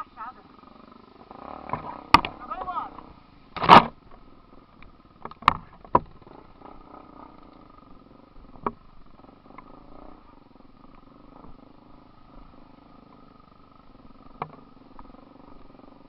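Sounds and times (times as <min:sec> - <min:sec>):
off-road vehicle engine running: 0:00.0 - 0:16.0
sharp knocks and clunks: 0:01.7 - 0:02.4, 0:05.2 - 0:06.2.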